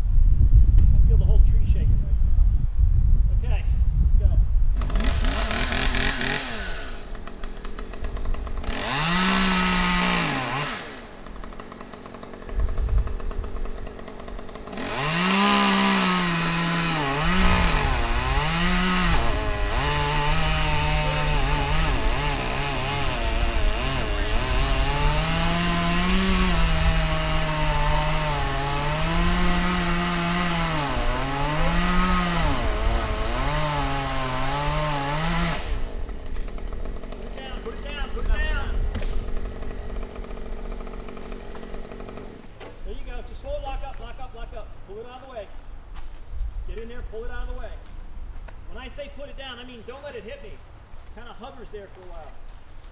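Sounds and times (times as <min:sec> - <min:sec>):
chainsaw cutting wood: 0:04.8 - 0:43.1.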